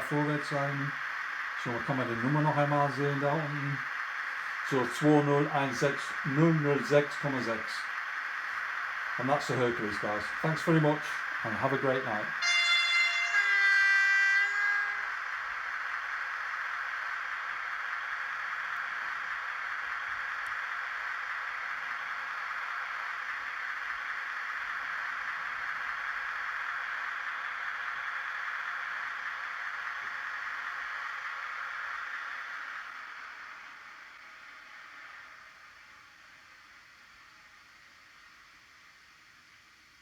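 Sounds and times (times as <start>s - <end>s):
steady hiss: 0.0s - 40.0s
model locomotive horn blast: 12.3s - 15.9s.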